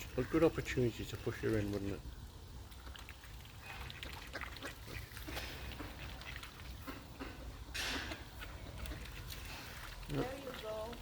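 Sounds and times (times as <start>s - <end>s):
ducks quacking: 3.8s - 5.4s.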